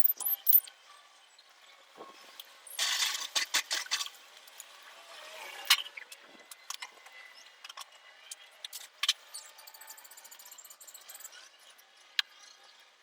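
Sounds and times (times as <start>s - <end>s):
light metallic clinks and rattles: 0.0s - 0.7s.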